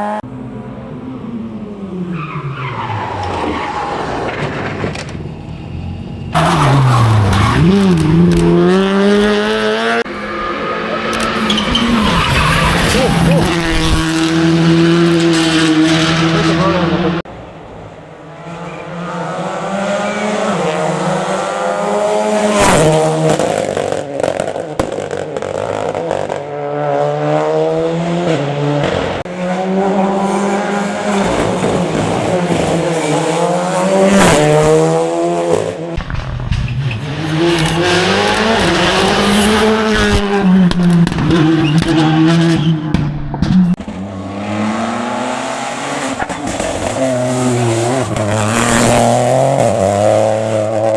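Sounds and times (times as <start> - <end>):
rally car engines revving: 0.0 - 50.9.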